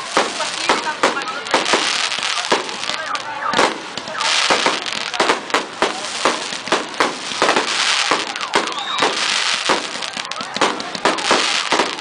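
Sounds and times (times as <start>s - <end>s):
fireworks bangs: 0.0s - 12.0s
fireworks crackling hiss: 0.0s - 12.0s.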